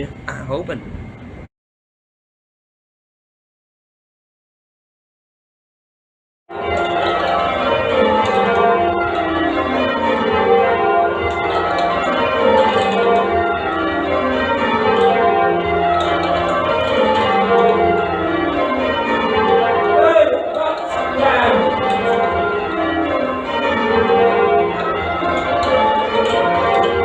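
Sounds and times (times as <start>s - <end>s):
church bells change ringing: 6.5s - 27.0s.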